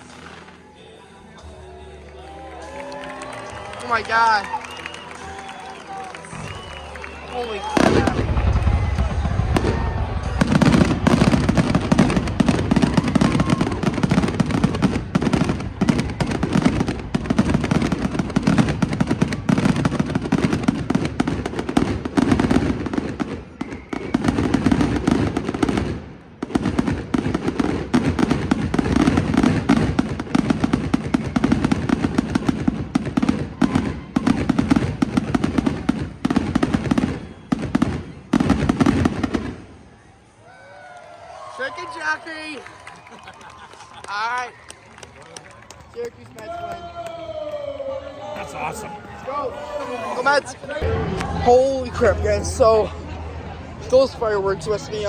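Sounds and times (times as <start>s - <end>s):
fireworks bangs and crackling: 0.0s - 0.8s, 2.7s - 40.6s.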